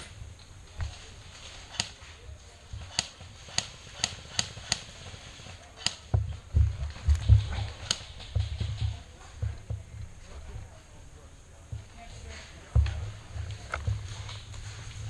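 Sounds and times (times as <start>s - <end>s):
microphone handling thuds: 6.1s - 10.8s, 11.7s - 15.0s.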